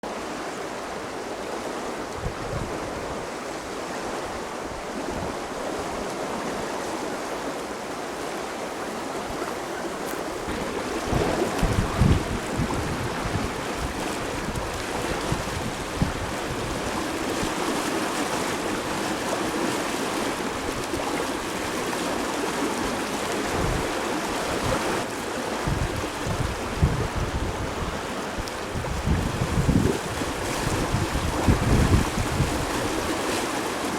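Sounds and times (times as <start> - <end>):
river water rushing: 0.0 - 33.9
wind buffeting microphone: 2.1 - 3.5, 9.2 - 19.2, 22.6 - 33.9.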